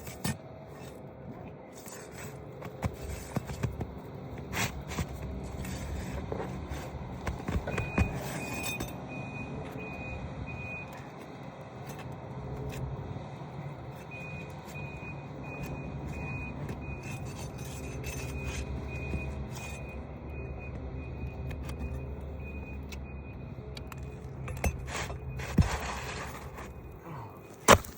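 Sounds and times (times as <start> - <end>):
reversing alarm beeping: 7.3 - 11.0, 14.0 - 27.6.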